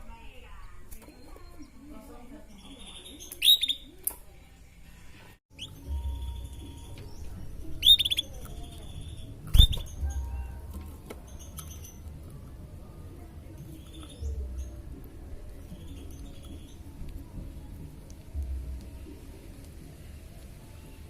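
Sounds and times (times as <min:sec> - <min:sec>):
canary chirping: 0:00.4 - 0:04.0, 0:05.5 - 0:12.9, 0:13.5 - 0:17.8.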